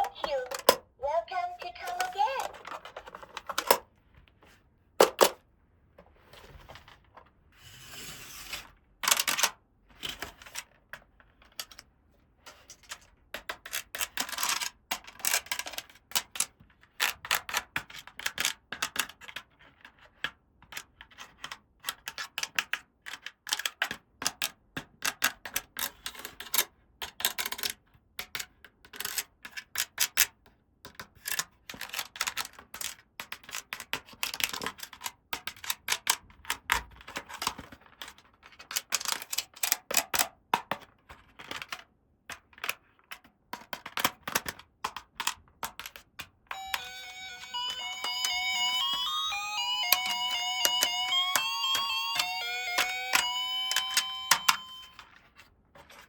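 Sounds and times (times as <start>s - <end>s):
plastic toy pieces clicking: 0.0s - 0.8s.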